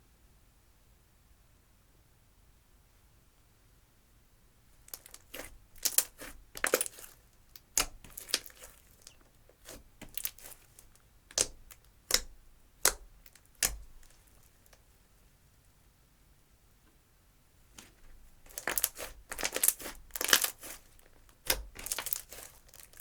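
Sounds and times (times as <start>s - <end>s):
slime crackling pops: 4.9s - 8.8s, 9.6s - 10.6s, 18.5s - 20.8s, 21.4s - 23.0s.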